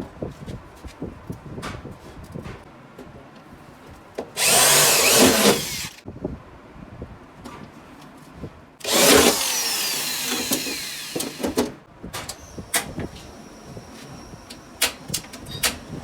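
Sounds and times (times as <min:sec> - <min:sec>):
power tool winding down: 0:04.4 - 0:06.0, 0:08.8 - 0:11.6
sharp clicks and knocks: 0:08.8 - 0:12.9.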